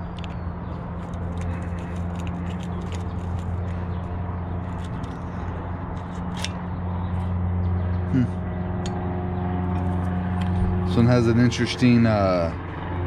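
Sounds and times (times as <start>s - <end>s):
bicycle parts clicking and tapping: 0.0s - 6.6s
steady low hum: 0.0s - 13.0s.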